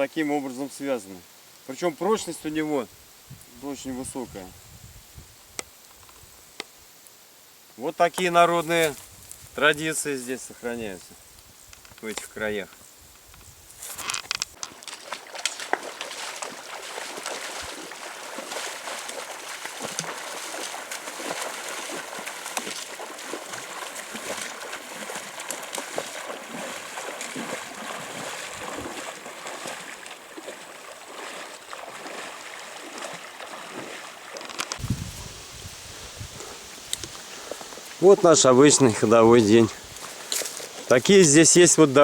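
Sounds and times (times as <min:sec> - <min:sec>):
river water running: 0:13.9 - 0:42.0
faint ticks: 0:36.8 - 0:38.0.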